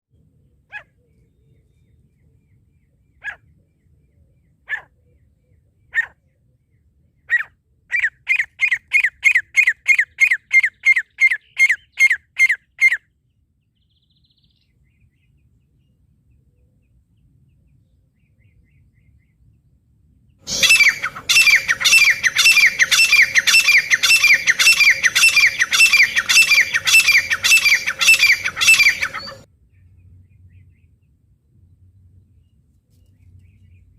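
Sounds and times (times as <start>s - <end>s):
francolin calls: 20.5s - 29.4s.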